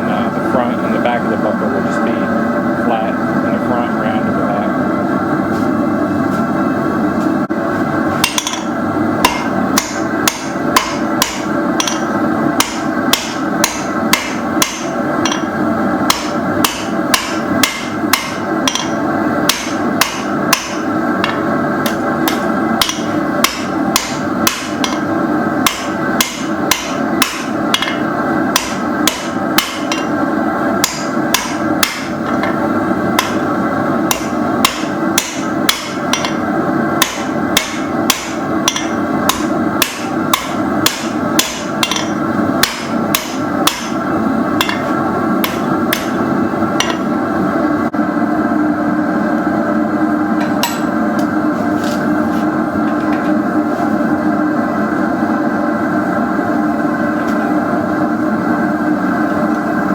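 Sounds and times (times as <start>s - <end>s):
equipment humming: 0.0s - 59.9s
hammer striking steel on anvil: 8.2s - 30.2s, 30.8s - 32.6s, 33.2s - 36.4s, 37.0s - 44.0s, 44.6s - 47.2s, 50.4s - 51.3s.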